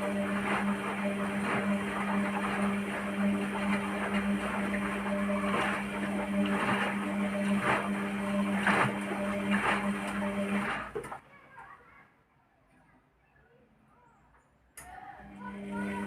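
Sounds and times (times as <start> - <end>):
washing machine motor hum: 0.0 - 11.2, 14.8 - 16.0
washing machine knocking: 0.1 - 11.2.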